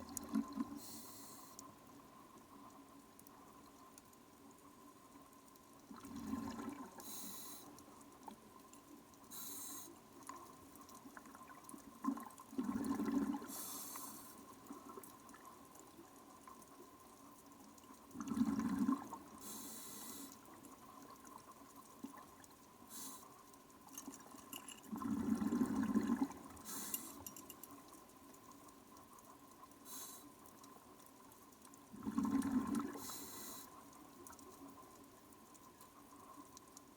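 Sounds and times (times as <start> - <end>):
faint steady whine: 0.0 - 36.9
bubbles bursting: 12.1 - 13.5, 24.9 - 26.5.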